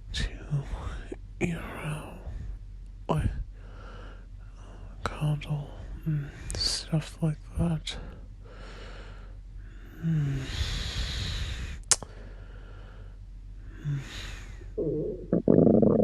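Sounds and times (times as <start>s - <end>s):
loud low rumbling: 0.0s - 8.7s, 14.5s - 16.0s
breathing close to microphone: 3.3s - 5.0s, 7.9s - 14.8s.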